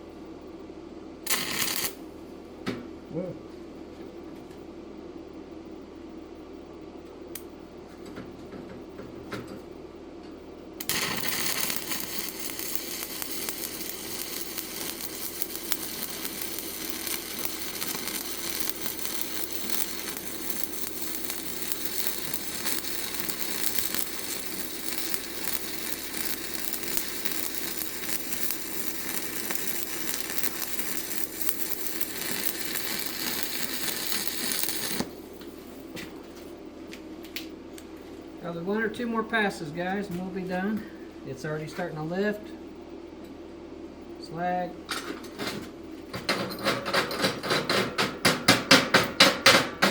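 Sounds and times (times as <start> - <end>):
welding arc crackling and sizzling: 1.2 - 2.1, 10.8 - 36.0.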